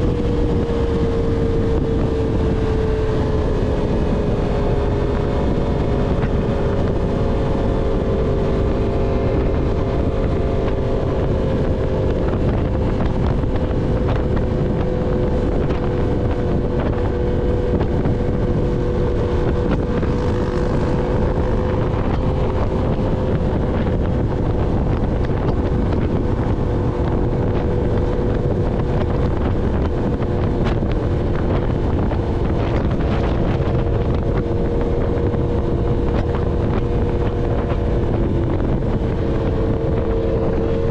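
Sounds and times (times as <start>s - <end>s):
motorcycle engine cruising: 0.0s - 40.9s
wind noise on microphone: 0.0s - 40.9s.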